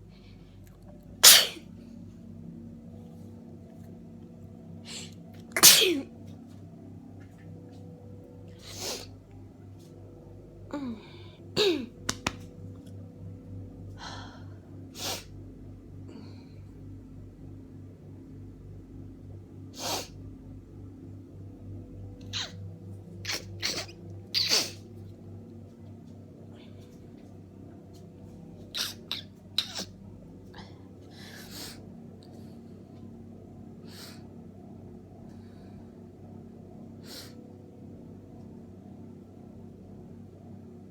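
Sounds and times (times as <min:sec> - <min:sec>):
person sneezing: 0:01.2 - 0:01.6, 0:04.9 - 0:06.1.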